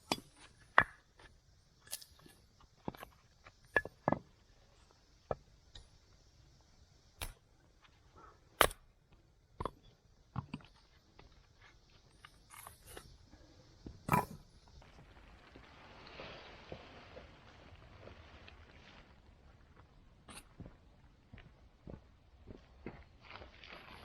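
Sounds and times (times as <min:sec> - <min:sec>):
faint steady hiss: 0:00.0 - 0:24.0.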